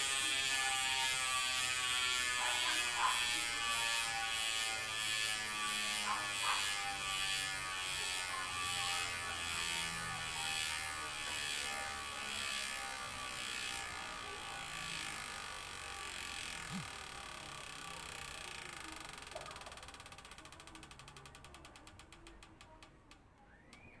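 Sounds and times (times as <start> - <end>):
bicycle hub freewheeling buzz: 0.0 - 22.9.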